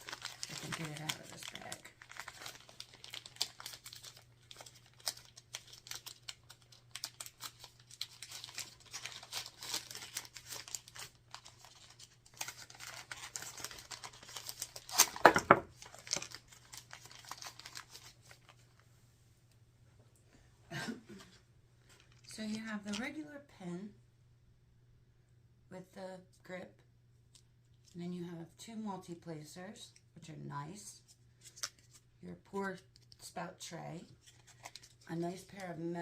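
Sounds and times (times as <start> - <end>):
plastic bag crinkling: 0.0 - 18.6.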